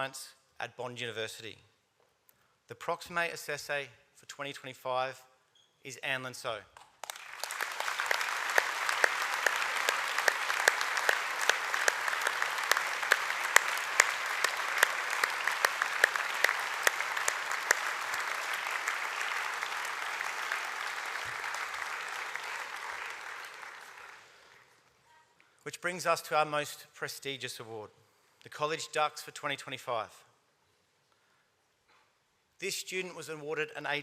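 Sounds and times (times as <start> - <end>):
audience applauding: 7.0 - 24.8.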